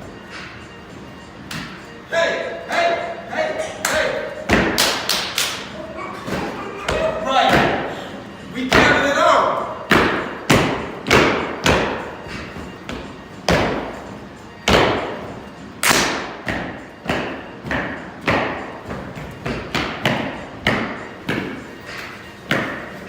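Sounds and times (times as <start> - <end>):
stomps and claps: 3.8 - 5.7, 15.8 - 18.6.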